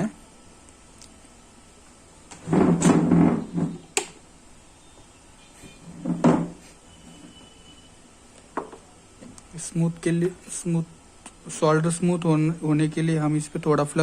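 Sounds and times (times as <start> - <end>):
objects clattering on workbench: 2.3 - 3.8, 5.6 - 7.5.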